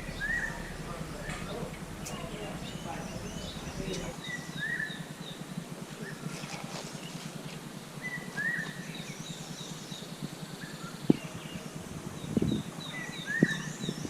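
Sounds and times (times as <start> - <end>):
birds high down-slurred calls: 0.0 - 5.4, 6.0 - 14.0
lower arched bird call: 0.0 - 7.3.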